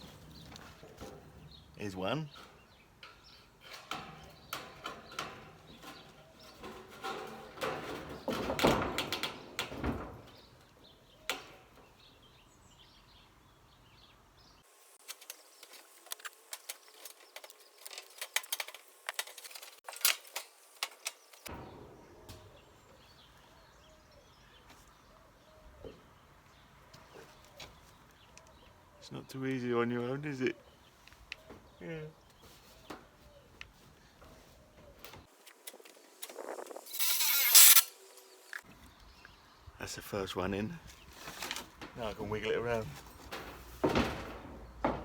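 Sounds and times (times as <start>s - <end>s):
metal sheet knocks and scrapes: 3.7s - 10.5s, 21.5s - 23.2s, 42.8s - 45.0s.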